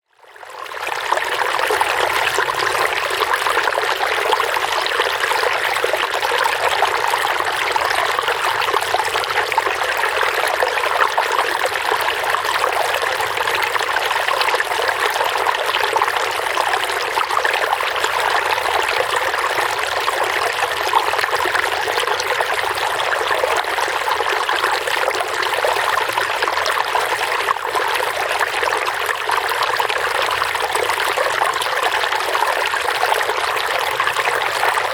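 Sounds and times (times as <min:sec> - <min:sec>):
water trickling and splashing: 0:00.5 - 0:34.9.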